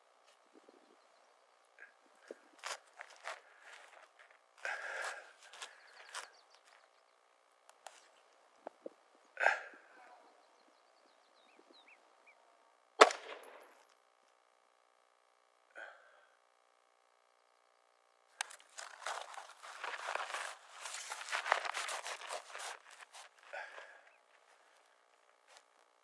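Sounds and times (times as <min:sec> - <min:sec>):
rifle shot: 0:13.0 - 0:13.7
irregular rustling: 0:18.4 - 0:26.0.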